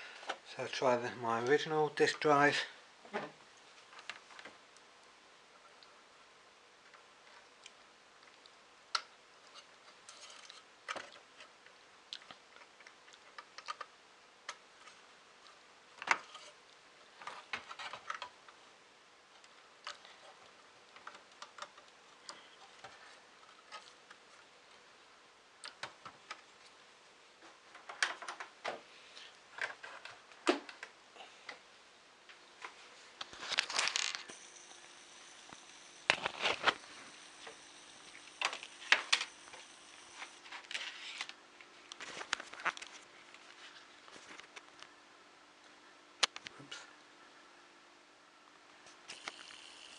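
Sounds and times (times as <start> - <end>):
floppy disk drive clicks and clatter: 16.0 - 18.6, 19.4 - 24.3, 25.7 - 26.5, 27.4 - 28.8, 33.5 - 43.0, 48.9 - 49.9.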